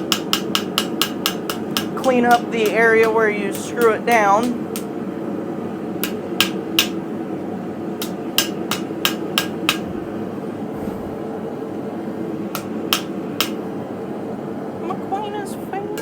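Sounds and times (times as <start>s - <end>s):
hammer striking steel on anvil: 0.0s - 2.4s, 6.0s - 7.0s, 8.0s - 9.8s
steady hum: 0.0s - 16.0s.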